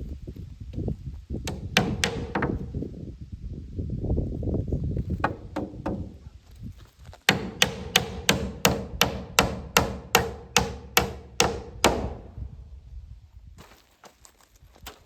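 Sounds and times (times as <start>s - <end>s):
hammer driving nails into wood: 1.5s - 2.7s, 7.3s - 12.4s.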